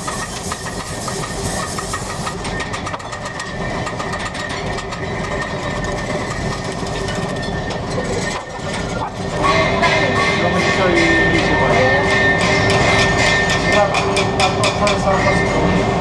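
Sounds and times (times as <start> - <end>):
machine rattling: 0.0 - 9.4.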